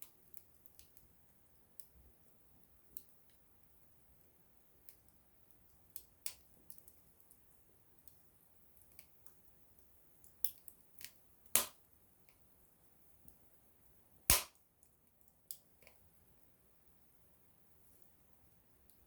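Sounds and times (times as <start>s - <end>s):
wood fire crackling: 0.0s - 19.0s.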